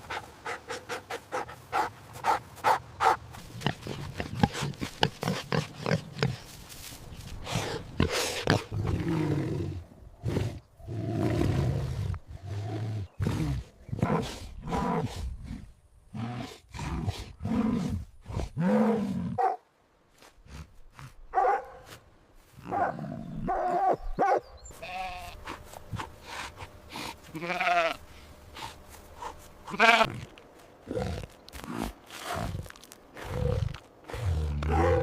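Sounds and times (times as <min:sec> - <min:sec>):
farm animals bleating: 0:24.7 - 0:25.6, 0:27.2 - 0:28.2, 0:29.6 - 0:31.2.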